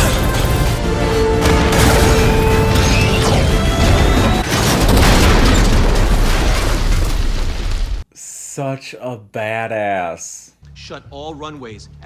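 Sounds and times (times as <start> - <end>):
dramatic orchestral score: 0.0 - 4.5
booms and crashing effects: 1.4 - 8.0.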